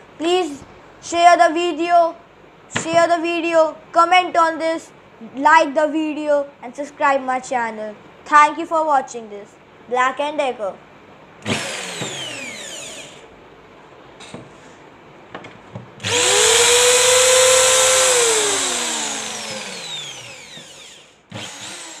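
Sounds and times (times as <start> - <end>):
hammer drill motor whine: 11.4 - 13.3, 16.0 - 22.0.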